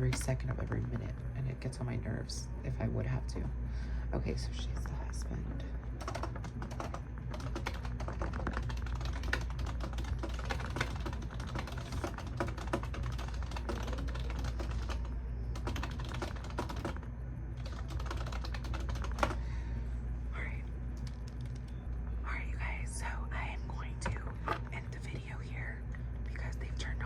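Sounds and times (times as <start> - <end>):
steady low hum: 0.0 - 27.0
fast keyboard typing: 4.5 - 17.0, 17.6 - 19.4, 21.0 - 21.9.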